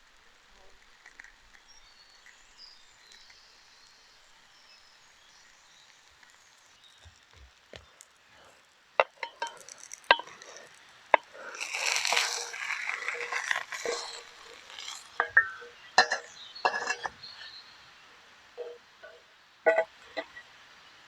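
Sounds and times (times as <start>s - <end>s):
small hard objects clinking: 5.2s - 17.6s, 18.6s - 20.4s.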